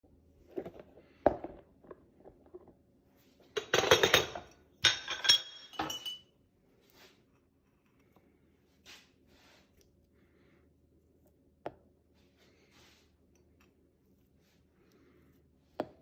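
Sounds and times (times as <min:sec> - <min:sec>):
glass and kitchenware clinking: 0:03.6 - 0:06.3.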